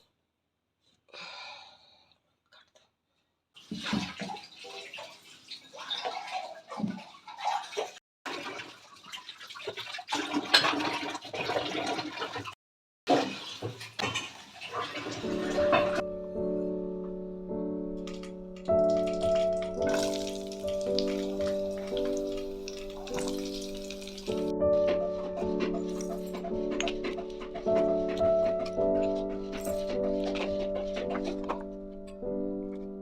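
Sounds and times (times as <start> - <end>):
water running from a tap: 13.2 - 16.0, 18.1 - 24.6
small knocks and clatter: 18.0 - 33.0.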